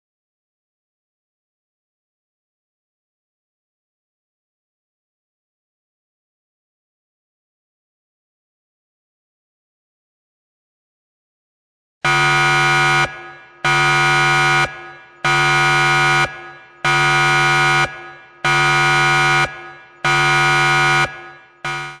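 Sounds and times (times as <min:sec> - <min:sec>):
buzzy electronic timer alarm beeps: 0:12.1 - 0:22.0.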